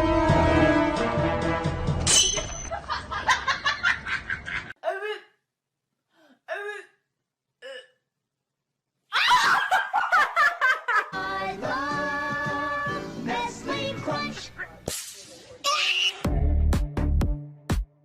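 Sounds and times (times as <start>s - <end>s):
person laughing in bursts: 2.7s - 4.8s.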